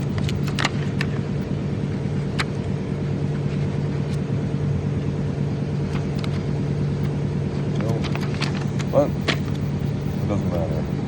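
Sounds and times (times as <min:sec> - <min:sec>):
engine hum: 0:00.0 - 0:11.0.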